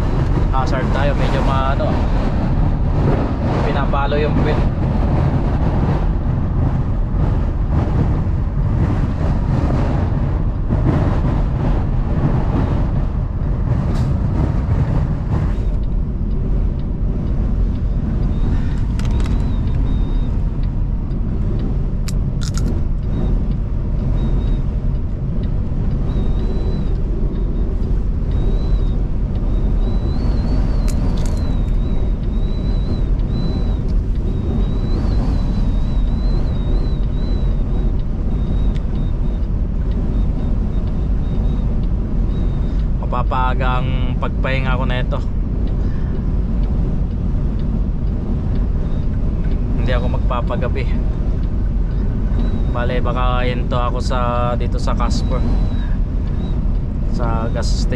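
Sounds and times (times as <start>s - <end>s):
road rumble: 0.0s - 57.9s
wind buffeting truck: 0.0s - 57.9s
faint high whistle: 28.3s - 39.4s, 55.0s - 56.6s.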